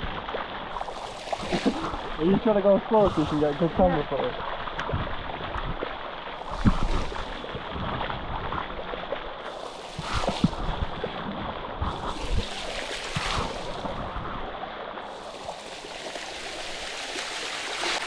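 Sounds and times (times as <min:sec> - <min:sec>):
water rushing over rocks: 0:00.0 - 0:18.0
dull thumps and splashes: 0:00.8 - 0:14.2.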